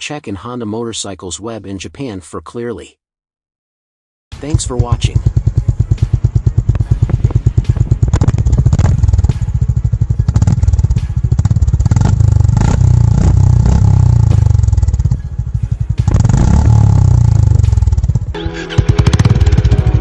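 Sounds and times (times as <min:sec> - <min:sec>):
motorcycle engine revving: 0:04.4 - 0:20.0.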